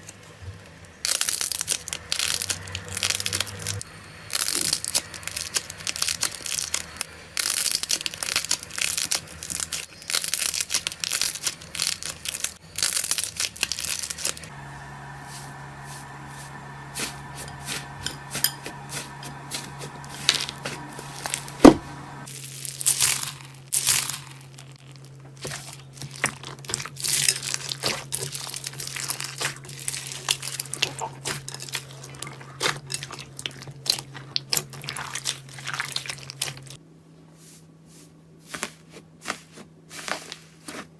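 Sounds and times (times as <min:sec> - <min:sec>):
crunchy slime crackling and popping: 0:01.0 - 0:14.5, 0:22.2 - 0:36.8
steady low hum: 0:14.4 - 0:22.3.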